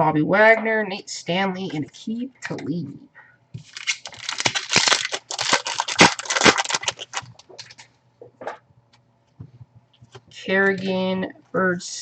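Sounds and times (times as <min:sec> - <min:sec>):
foil wrapper crinkling and tearing: 0:03.6 - 0:07.9.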